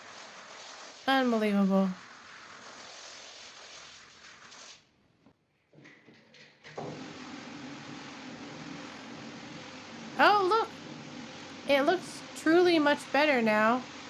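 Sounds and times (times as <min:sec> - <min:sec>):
steady hiss of water: 0:00.0 - 0:04.9, 0:06.7 - 0:14.0
machine hum: 0:06.6 - 0:14.0.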